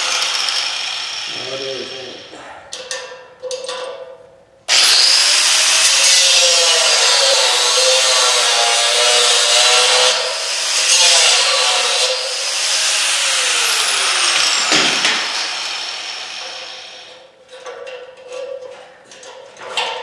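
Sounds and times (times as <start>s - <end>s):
power saw cutting metal: 0.0s - 2.4s, 4.7s - 17.2s.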